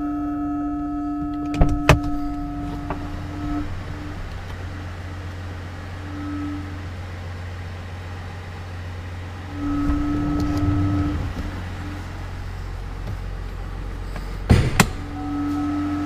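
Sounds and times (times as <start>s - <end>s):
diesel engine idling: 0.6s - 16.0s
electric motor whining: 1.2s - 13.1s.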